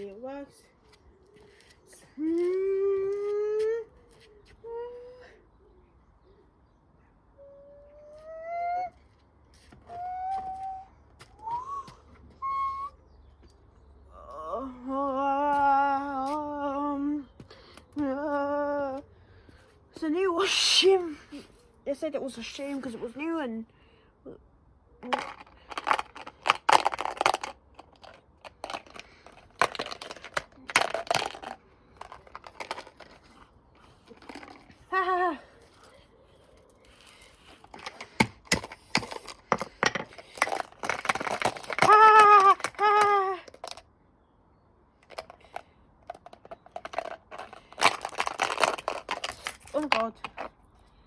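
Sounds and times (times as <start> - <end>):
person calling: 7.4 - 9.0, 9.8 - 13.0
crinkling and rustling: 25.0 - 43.8, 45.0 - 50.8.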